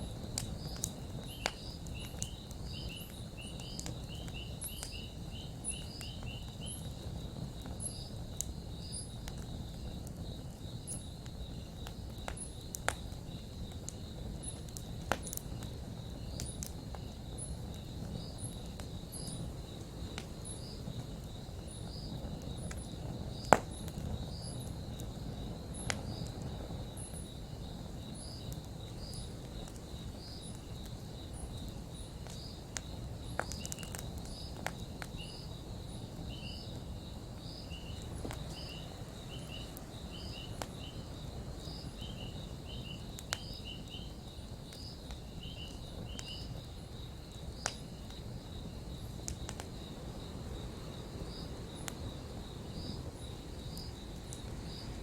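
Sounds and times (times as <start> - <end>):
campfire crackling and popping: 0.0 - 55.0
insect chirping: 0.0 - 55.0.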